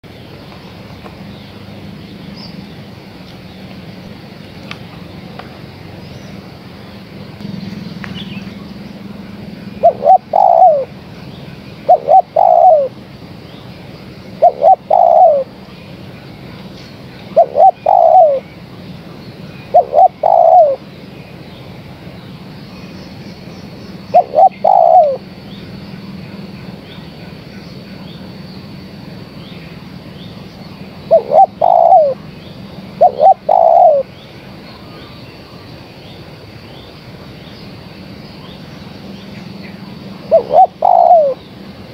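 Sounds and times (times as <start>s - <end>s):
background hiss: 0.0s - 41.9s
dove cooing: 7.4s - 11.0s, 11.8s - 13.0s, 14.4s - 15.6s, 17.3s - 18.5s, 19.7s - 20.8s, 24.1s - 25.3s, 31.0s - 32.3s, 32.9s - 34.1s, 40.2s - 41.4s.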